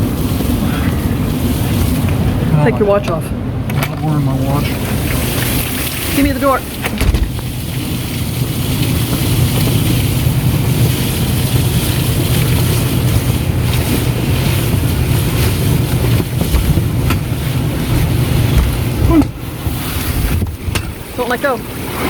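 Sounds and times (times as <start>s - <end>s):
storm wind buffeting microphone: 6.1s - 22.0s.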